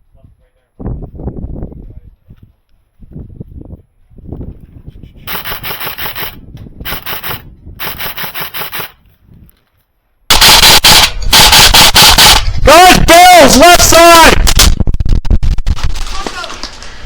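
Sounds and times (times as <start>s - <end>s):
airsoft gun rapid firing: 5.3s - 9.0s, 10.3s - 12.5s.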